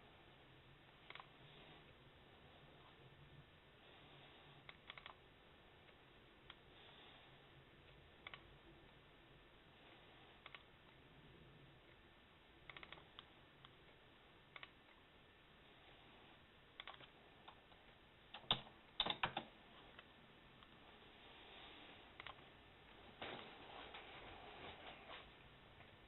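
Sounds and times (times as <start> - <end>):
faint room hiss: 0.0 - 26.0
computer keyboard typing: 4.7 - 5.2, 18.3 - 19.5.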